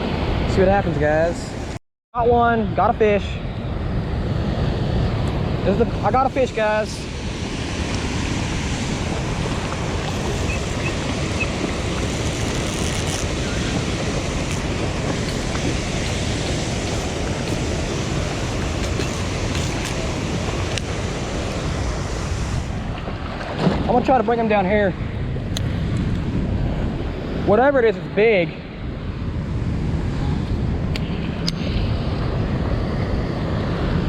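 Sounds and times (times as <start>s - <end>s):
river water rushing: 5.6s - 23.6s.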